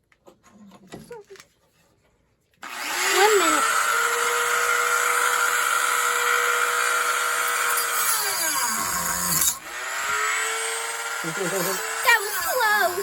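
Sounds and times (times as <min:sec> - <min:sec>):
rotary tool whining into wood: 0:02.6 - 0:13.0.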